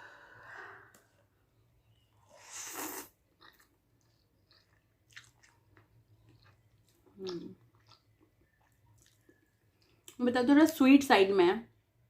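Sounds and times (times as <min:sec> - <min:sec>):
person chewing noodles: 0:02.0 - 0:10.2.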